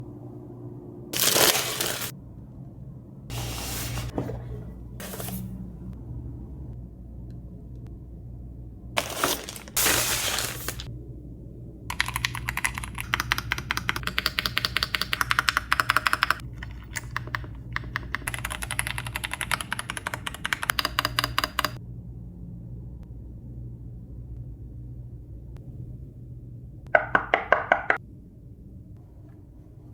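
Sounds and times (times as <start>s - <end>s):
low steady hum: 0.0s - 14.3s, 15.0s - 29.9s
keyboard keystroke clacks: 11.9s - 21.8s.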